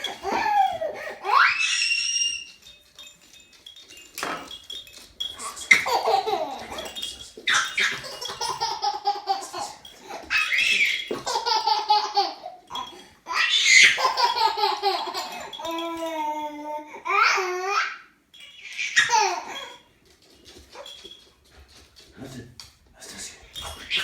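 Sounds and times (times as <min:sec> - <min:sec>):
baby laughing: 0:00.0 - 0:02.4, 0:05.4 - 0:18.0, 0:18.6 - 0:19.9.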